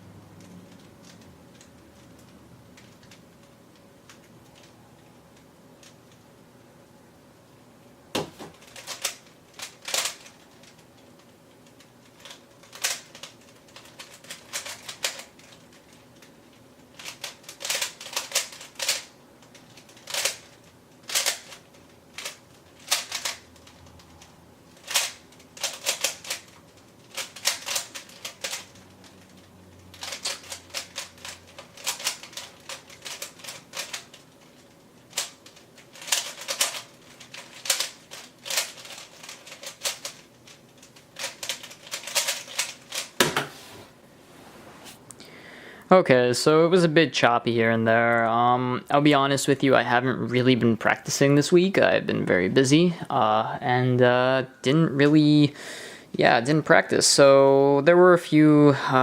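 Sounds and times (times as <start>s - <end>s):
plastic puzzle cube layers clicking: 8.6s - 16.3s, 16.9s - 23.4s, 24.8s - 34.3s, 35.1s - 43.1s.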